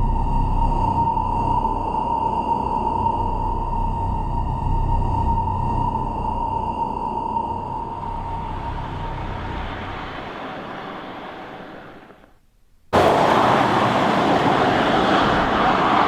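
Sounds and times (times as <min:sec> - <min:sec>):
steady rushing hum: 0:05.4 - 0:16.0
loud rushing noise: 0:07.9 - 0:12.3, 0:12.9 - 0:16.0.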